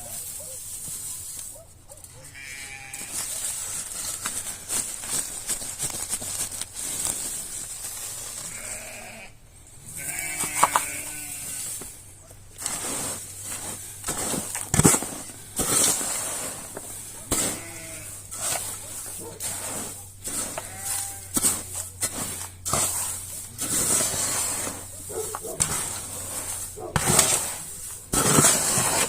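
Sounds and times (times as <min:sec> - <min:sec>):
rustling: 0:00.0 - 0:09.2, 0:10.0 - 0:29.0
sheep bleating: 0:02.2 - 0:03.2, 0:08.4 - 0:11.8, 0:17.3 - 0:18.3, 0:20.4 - 0:21.6.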